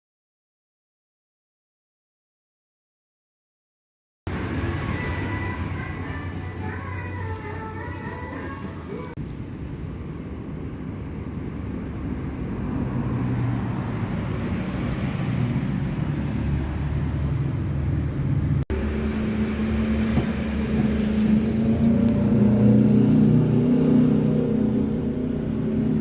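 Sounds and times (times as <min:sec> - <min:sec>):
vehicle engine running: 0:15.8 - 0:26.0.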